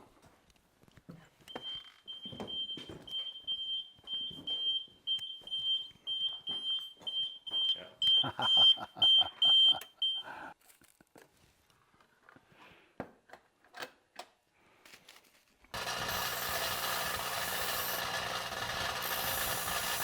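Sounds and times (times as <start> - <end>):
electronic alarm beeping: 1.5 - 10.3, 15.8 - 20.0.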